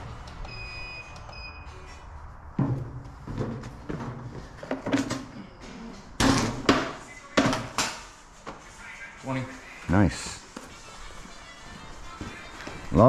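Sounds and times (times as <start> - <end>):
scrap metal and buckets clattering: 2.6 - 8.0.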